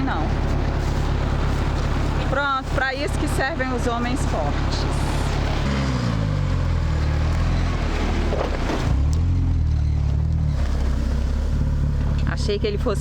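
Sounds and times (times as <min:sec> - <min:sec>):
car engine pulling away: 0:00.0 - 0:13.0.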